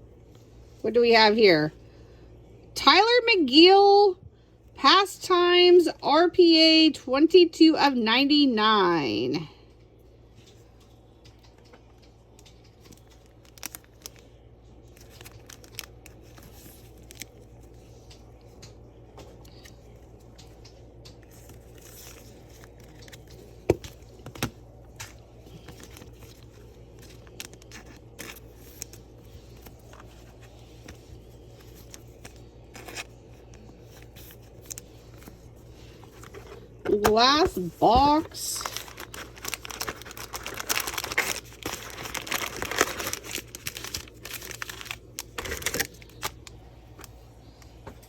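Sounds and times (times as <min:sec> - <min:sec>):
packaging crackling and rustling: 0:10.4 - 0:18.7, 0:19.3 - 0:47.8.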